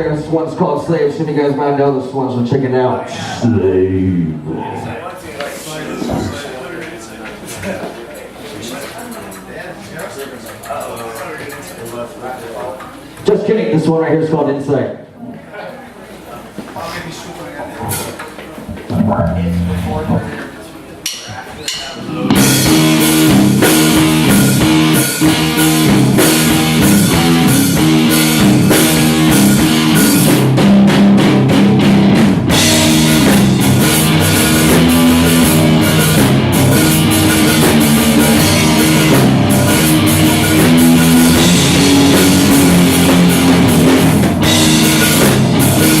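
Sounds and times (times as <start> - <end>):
drum kit: 18.7 - 20.6, 22.3 - 46.0
guitar: 18.7 - 20.6, 22.1 - 46.0
live rock band playing: 18.7 - 20.6, 22.3 - 46.0.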